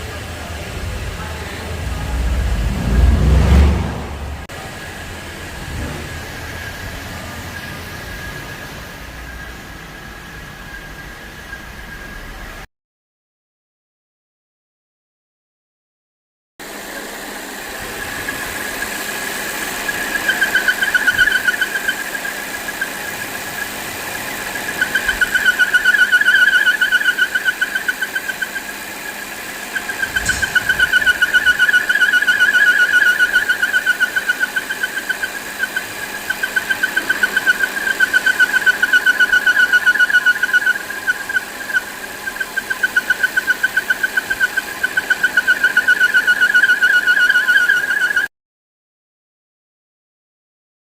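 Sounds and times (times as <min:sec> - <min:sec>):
engine running: 0:00.0 - 0:12.6, 0:16.6 - 0:47.9
high fluttering whistle: 0:17.7 - 0:48.3.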